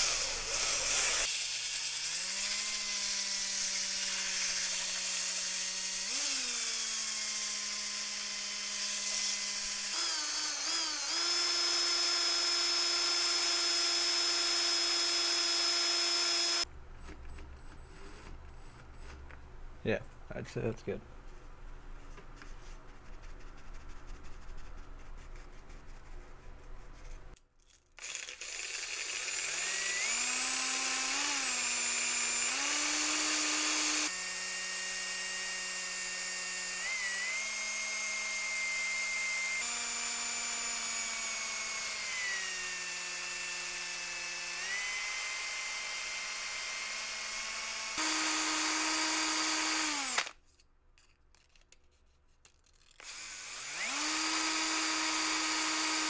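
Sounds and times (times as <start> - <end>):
electric power tool motor whine: 0.0 - 16.7, 28.0 - 50.3, 53.0 - 56.0.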